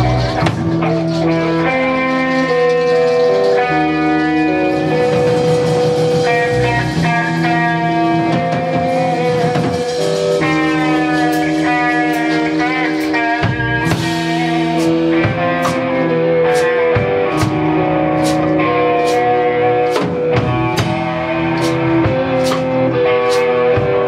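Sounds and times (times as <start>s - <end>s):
sustained guitar chords: 0.0s - 24.0s
sharp drum hits: 8.0s - 24.0s.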